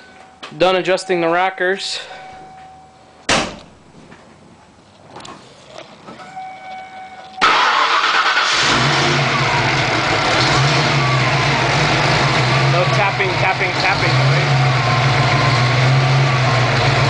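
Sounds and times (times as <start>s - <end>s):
car engine cranking and starting: 7.4s - 17.0s
car engine idling: 7.4s - 17.0s.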